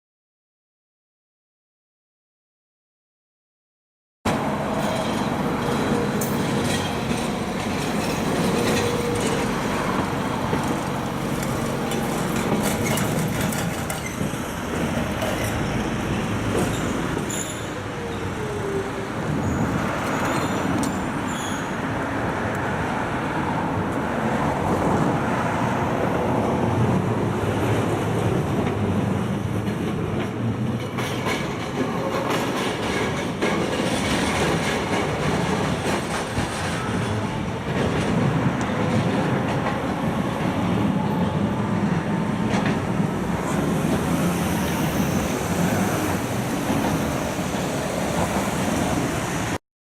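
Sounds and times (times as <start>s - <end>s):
train wheels rumbling on track: 4.3s - 49.6s
wheel squeal: 16.6s - 18.3s, 19.4s - 21.8s.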